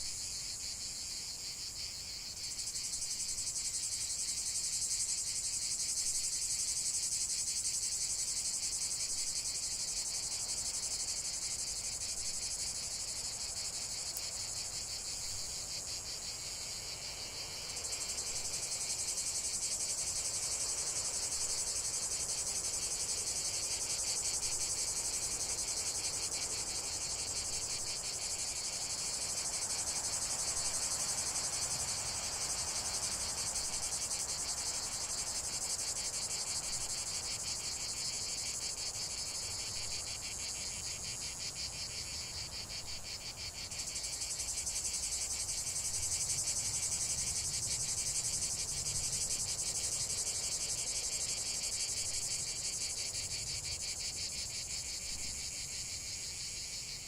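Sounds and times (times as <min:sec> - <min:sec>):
insects chirping: 0:00.0 - 0:57.0.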